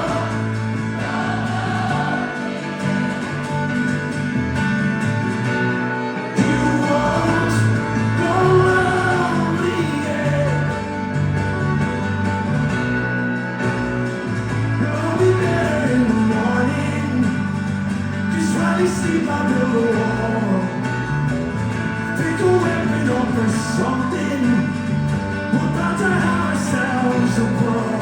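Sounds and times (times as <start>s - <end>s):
live band playing: 0.0s - 28.0s
person singing: 6.4s - 11.1s.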